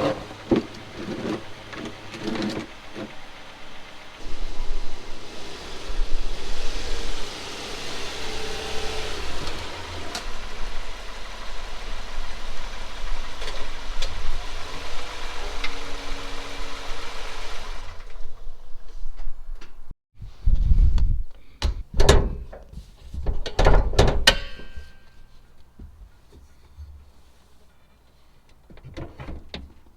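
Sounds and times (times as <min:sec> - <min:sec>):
car engine running: 0:00.0 - 0:18.1.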